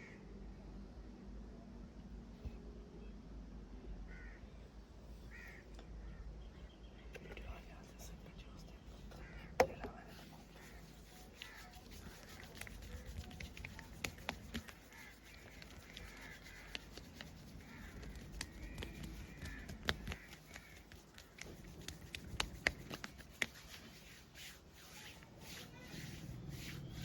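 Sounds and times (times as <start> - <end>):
hands rubbing body: 8.6 - 27.0.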